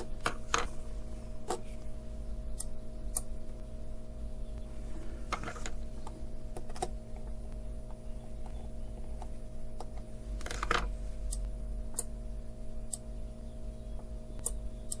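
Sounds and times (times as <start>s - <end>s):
steady low hum: 0.0s - 15.0s
small clicks: 14.4s - 15.0s.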